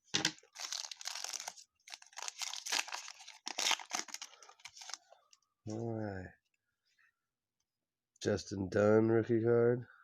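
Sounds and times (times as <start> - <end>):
plastic wrapper tearing and crinkling: 0.2 - 5.0.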